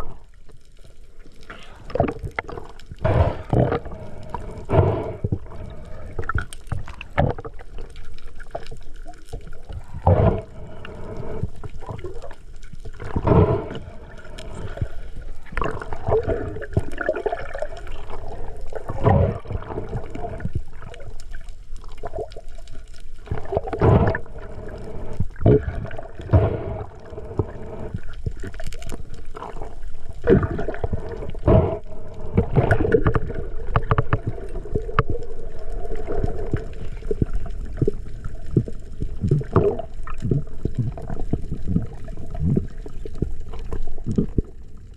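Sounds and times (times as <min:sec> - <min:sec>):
water sloshing and gurgling: 0:00.0 - 0:44.9.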